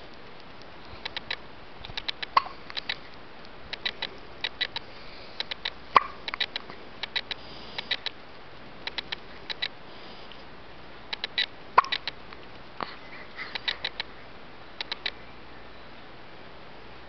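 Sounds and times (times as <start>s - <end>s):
faint quick clicks: 0.1s - 8.2s, 8.8s - 10.5s, 11.1s - 14.1s, 14.8s - 15.2s
hiccups: 2.4s - 2.6s, 6.0s - 6.2s, 11.8s - 12.0s.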